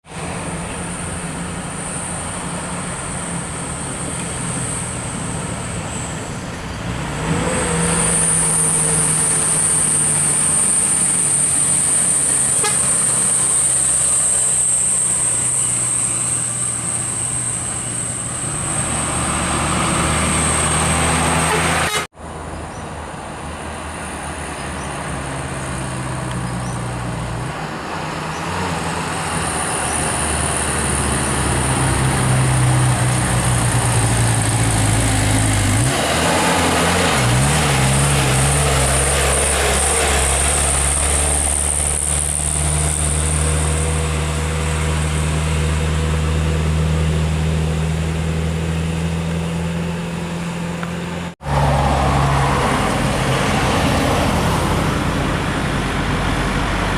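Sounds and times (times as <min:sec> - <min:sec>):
diesel truck engines under load: 0:00.0 - 0:56.9
horn toots: 0:12.3 - 0:13.5, 0:20.9 - 0:22.1.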